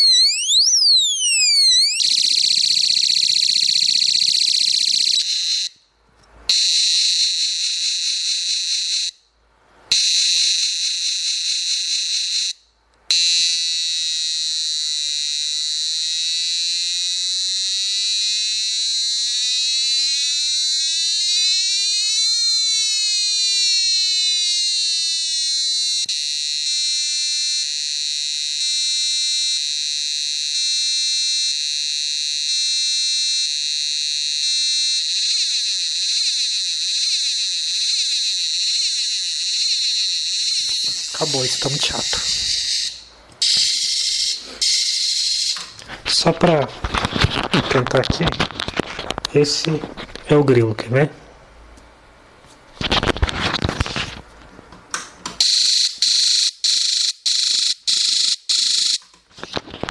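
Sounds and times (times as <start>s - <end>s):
warbling electronic tone: 0.0s - 2.9s, 40.4s - 45.2s
stepped electronic beeping: 0.0s - 4.4s, 40.4s - 45.6s
rapid high electronic beeping: 0.0s - 5.2s, 40.0s - 45.5s
electronic siren sweep: 0.0s - 5.8s, 9.9s - 46.5s.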